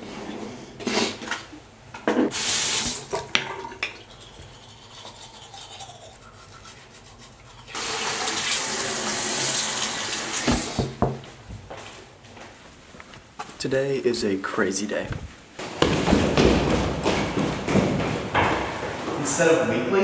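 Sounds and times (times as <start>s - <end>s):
water running from a tap: 7.7s - 10.8s.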